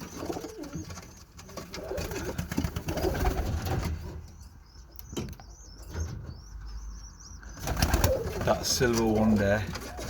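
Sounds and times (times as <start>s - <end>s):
pigeons cooing: 0.0s - 4.3s, 7.4s - 10.0s.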